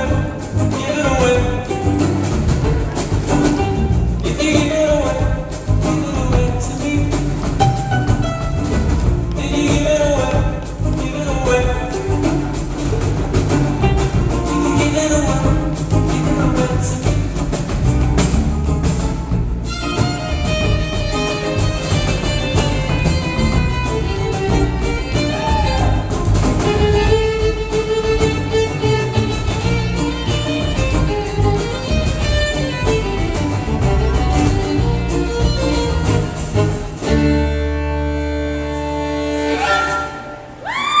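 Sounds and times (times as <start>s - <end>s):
live band music: 0.0s - 41.0s
violin playing: 7.6s - 10.1s, 19.3s - 41.0s.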